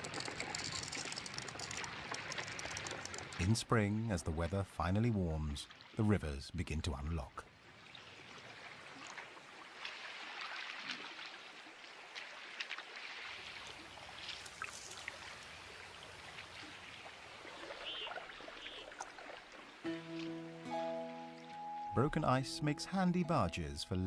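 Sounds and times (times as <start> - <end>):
ice clicks and tinkles: 0.0 - 3.5
river running and trickling: 0.0 - 24.0.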